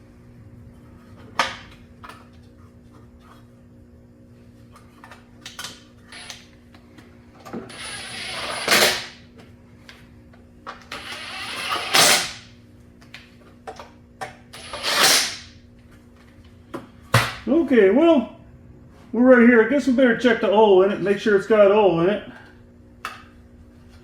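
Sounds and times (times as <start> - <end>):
cordless power driver: 7.7 - 9.1, 10.9 - 12.4.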